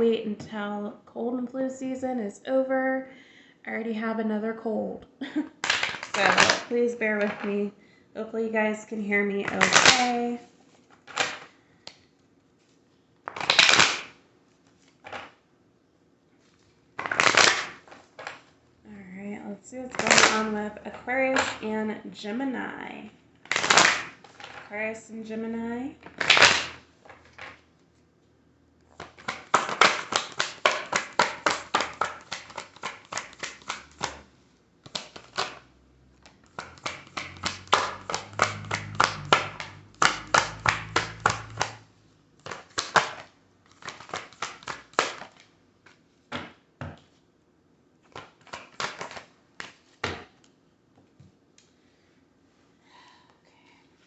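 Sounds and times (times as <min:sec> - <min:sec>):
cards being shuffled: 0:05.6 - 0:07.5, 0:09.4 - 0:10.2, 0:10.9 - 0:11.5, 0:12.6 - 0:15.4, 0:16.4 - 0:18.5, 0:19.9 - 0:20.6, 0:23.4 - 0:24.7, 0:26.0 - 0:27.6, 0:28.9 - 0:47.2, 0:48.0 - 0:50.4.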